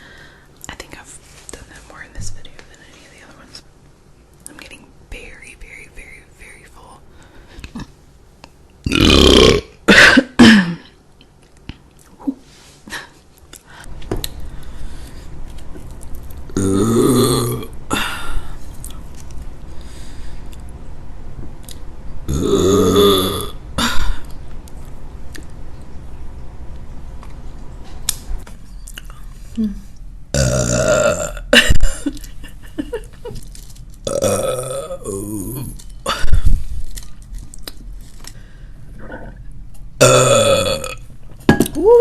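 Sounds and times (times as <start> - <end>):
woman burping: 8.9 - 11.0, 16.6 - 18.3, 22.3 - 24.2, 30.4 - 32.2, 34.1 - 36.3, 40.0 - 41.0.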